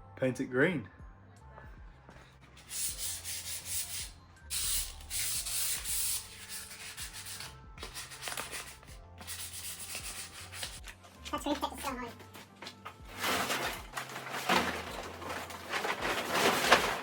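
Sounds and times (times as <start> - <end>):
sandpaper rubbing on steel: 2.6 - 10.9.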